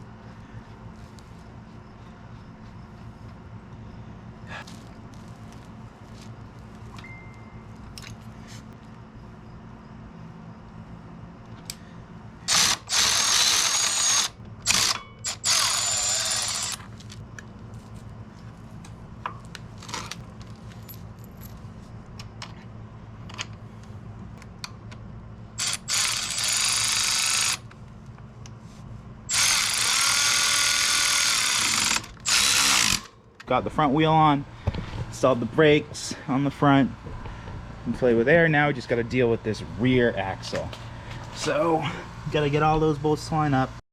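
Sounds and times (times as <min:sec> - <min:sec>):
power tool whining: 0:12.4 - 0:17.0, 0:25.6 - 0:27.7, 0:29.3 - 0:33.1.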